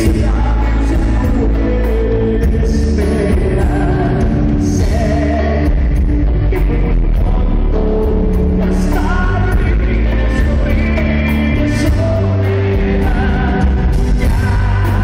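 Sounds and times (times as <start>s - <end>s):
loud rock music with singing: 0.0s - 15.0s.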